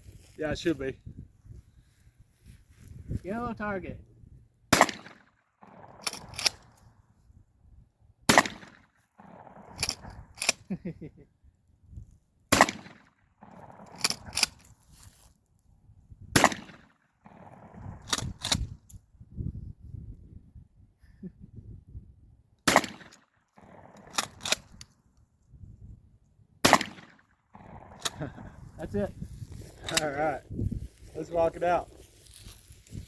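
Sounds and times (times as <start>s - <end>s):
shotgun shots: 4.7s - 6.7s, 8.3s - 10.5s, 12.5s - 14.5s, 16.3s - 18.3s, 22.6s - 24.6s, 26.6s - 28.2s.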